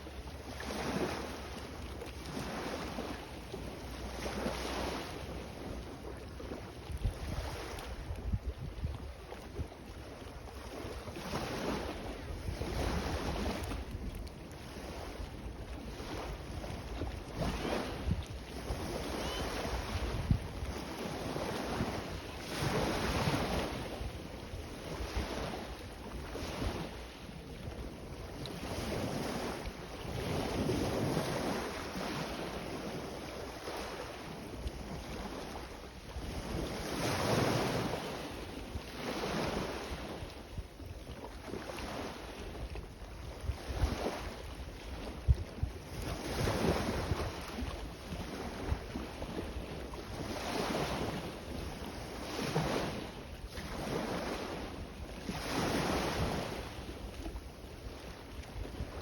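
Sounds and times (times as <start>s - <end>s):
sea waves breaking: 0.0s - 59.0s
wind buffeting microphone: 6.9s - 9.7s, 12.2s - 27.0s.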